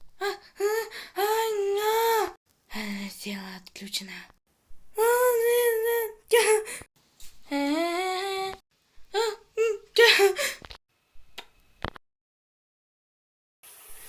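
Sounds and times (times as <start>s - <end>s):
woman crying and sobbing: 0.2s - 2.3s, 9.2s - 10.6s.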